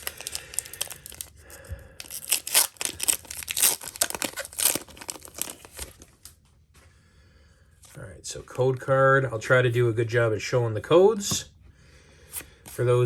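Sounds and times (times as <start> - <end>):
wrapper being torn open: 0.0 - 1.3, 2.0 - 6.1.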